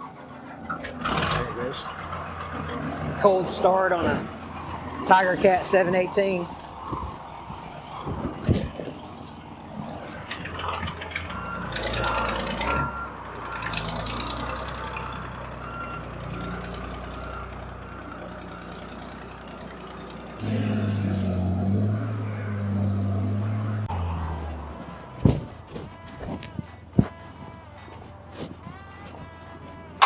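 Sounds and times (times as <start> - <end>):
diesel engine running: 0.0 - 30.0
high-pitched alarm beeping: 9.2 - 19.2.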